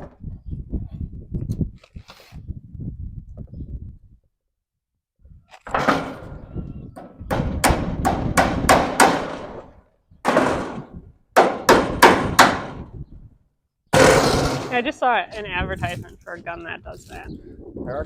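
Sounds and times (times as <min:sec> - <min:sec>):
hammer striking wood: 0:07.0 - 0:12.9.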